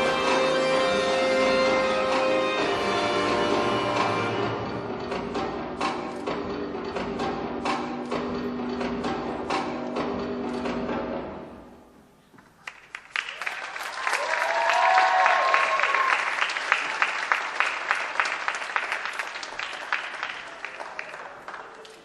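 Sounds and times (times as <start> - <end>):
audience applauding: 12.6 - 22.0
person cheering: 14.0 - 16.3.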